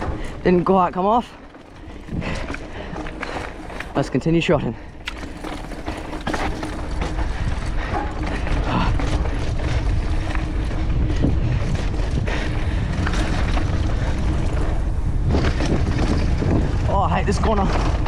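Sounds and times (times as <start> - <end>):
bike rattling on dirt trail: 0.0 - 18.0
wind rumble on microphone: 0.0 - 18.0
tyre noise: 0.4 - 7.4.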